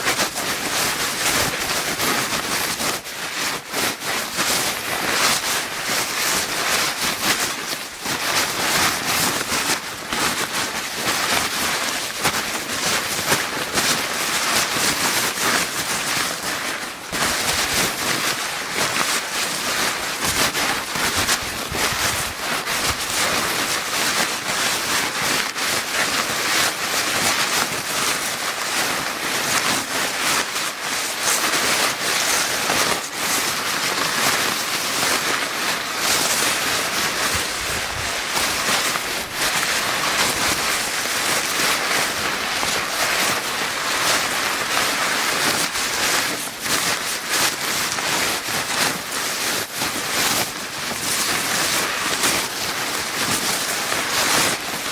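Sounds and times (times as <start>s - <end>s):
paper bag crinkling: 16.5s - 25.7s, 35.3s - 49.5s.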